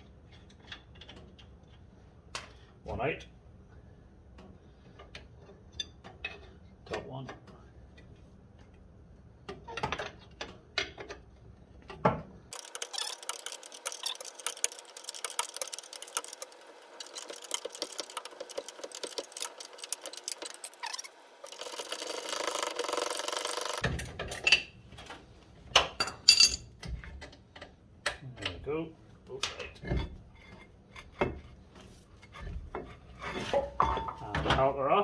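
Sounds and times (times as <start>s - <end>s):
wrench rapid metallic clicking: 12.5s - 23.8s
metal tool clanks: 26.0s - 26.7s.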